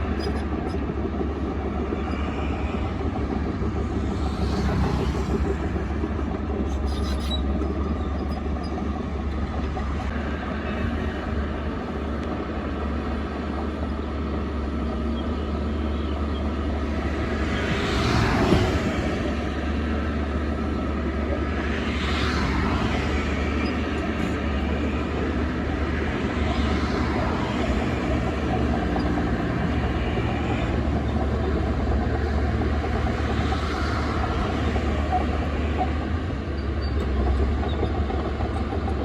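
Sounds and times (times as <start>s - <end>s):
bulldozer diesel engine droning: 0.0s - 39.0s.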